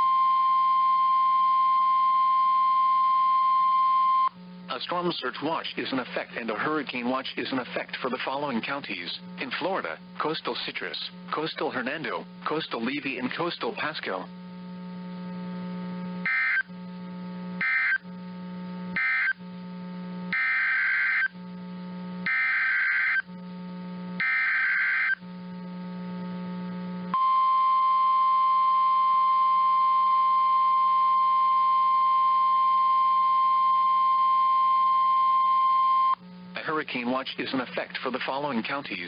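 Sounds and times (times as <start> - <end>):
digital data bursts: 16.2 - 16.7, 17.6 - 18.0, 19.0 - 19.4, 20.3 - 21.3, 22.2 - 23.3, 24.2 - 25.2
steady alarm tone: 16.2 - 16.7, 17.6 - 18.0, 19.0 - 19.4, 20.3 - 21.4, 22.2 - 23.3, 24.2 - 25.2.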